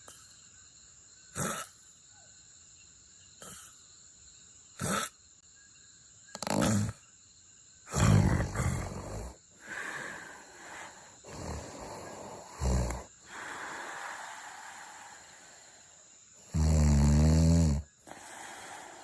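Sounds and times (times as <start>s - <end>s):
person snoring and snorting: 1.3s - 1.8s, 3.4s - 3.8s, 4.8s - 5.2s, 6.4s - 7.0s, 7.9s - 19.0s.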